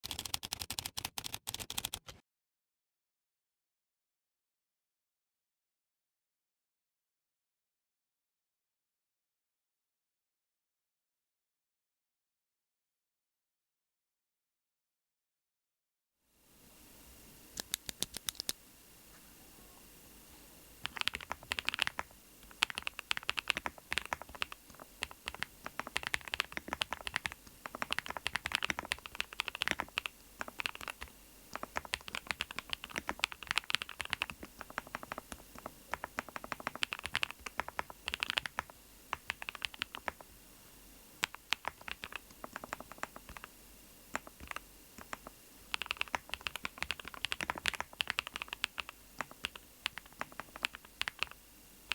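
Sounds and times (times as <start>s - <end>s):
mechanical keyboard typing: 0.0s - 2.2s, 17.6s - 18.6s, 20.8s - 40.3s, 41.2s - 43.5s, 44.1s - 51.9s.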